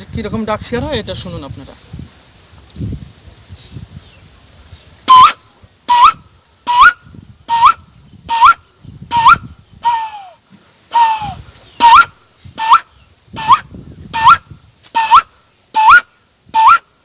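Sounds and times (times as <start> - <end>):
man whistling bird calls: 5.1 - 16.9.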